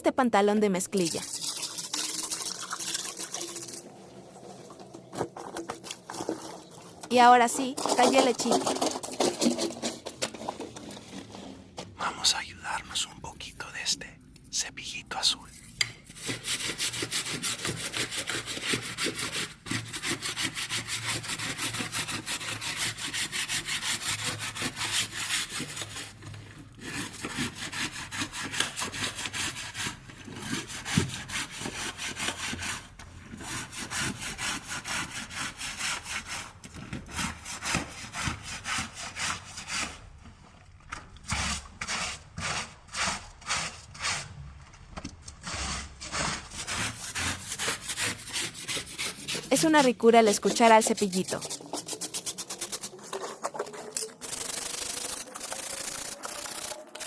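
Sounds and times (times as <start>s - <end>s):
brush scrubbing jeans: 46.6s - 57.0s.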